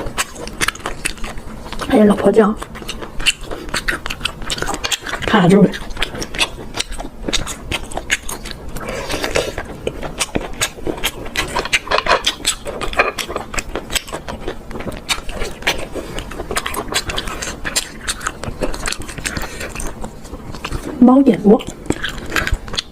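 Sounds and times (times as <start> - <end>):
seafood shells cracking: 9.2 - 20.8.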